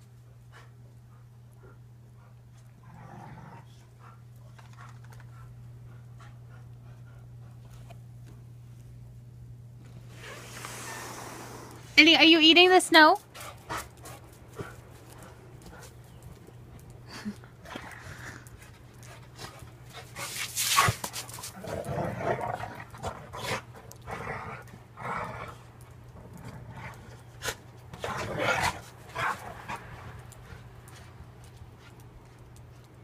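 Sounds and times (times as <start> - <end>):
dog panting: 3.8 - 8.0, 13.2 - 21.1.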